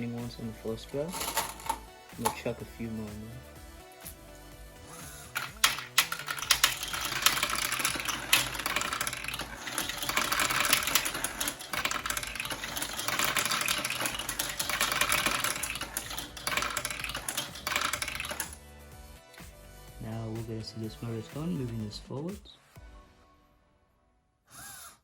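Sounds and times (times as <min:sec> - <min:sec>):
marbles clattering on plastic: 0:01.0 - 0:02.5, 0:05.1 - 0:18.6.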